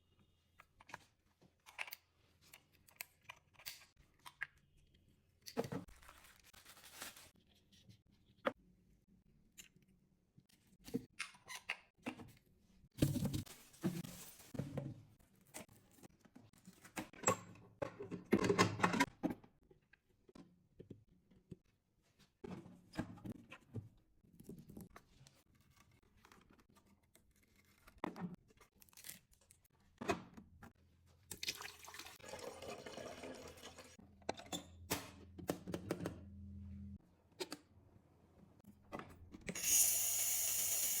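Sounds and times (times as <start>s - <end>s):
packaging rustling and tearing: 5.9s - 7.4s
water running: 31.5s - 34.0s
espresso machine pump humming: 39.6s - 41.0s.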